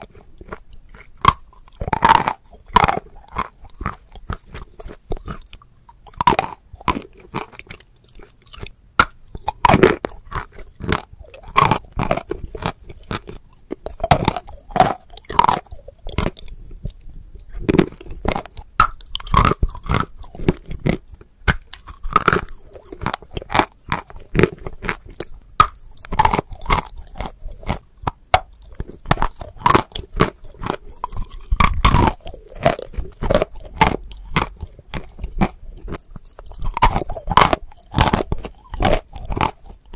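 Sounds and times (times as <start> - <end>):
chalk crunching and chewing: 0.0 - 39.9.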